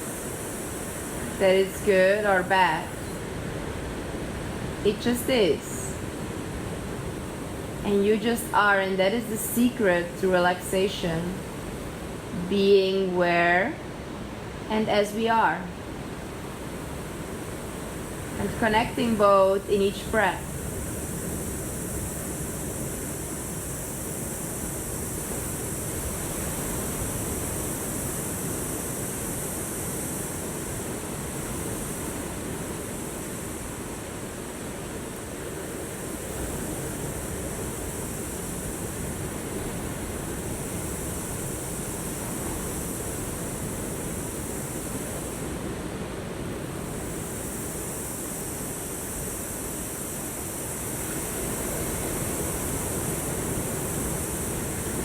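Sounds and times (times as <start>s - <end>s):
high hiss: 0.0s - 55.0s
ocean waves breaking on shore: 0.0s - 55.0s.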